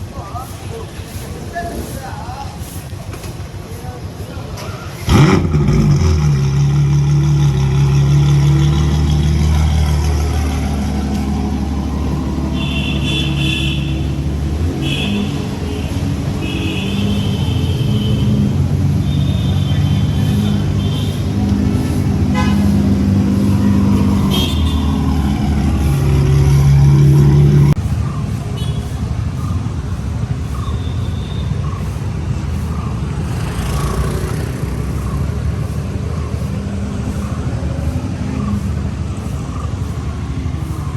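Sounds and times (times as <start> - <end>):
sports car engine at low revs: 5.1 - 13.5, 20.2 - 27.8
car horns honking: 7.4 - 27.8, 28.5 - 29.1.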